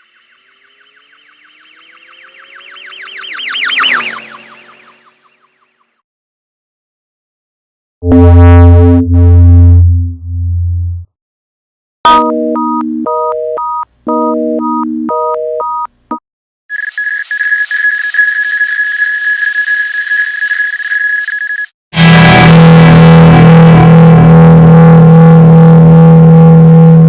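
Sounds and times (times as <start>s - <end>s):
low electronic drone: 0.0s - 5.3s, 8.0s - 11.1s, 22.0s - 27.0s
steady high electronic tone: 0.0s - 5.4s
repeating alarm-like beeps: 16.7s - 21.7s.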